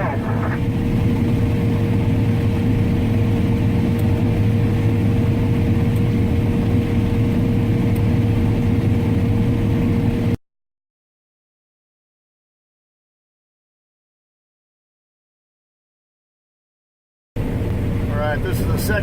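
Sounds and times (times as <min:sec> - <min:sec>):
high whine: 0:00.0 - 0:07.5
diesel engine droning: 0:00.0 - 0:10.4, 0:17.4 - 0:19.0.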